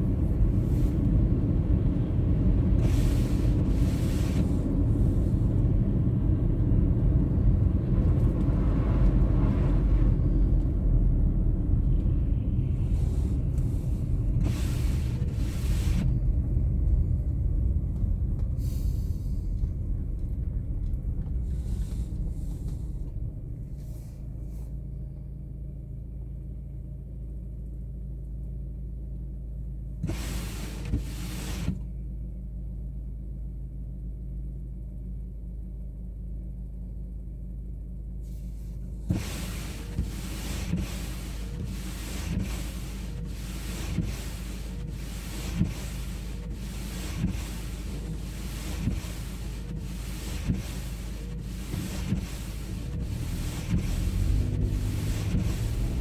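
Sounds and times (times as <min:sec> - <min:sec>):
car engine and tyres rumbling: 0:00.0 - 0:56.0
short hissing sweeps: 0:02.8 - 0:05.4, 0:18.6 - 0:19.6, 0:38.3 - 0:56.0.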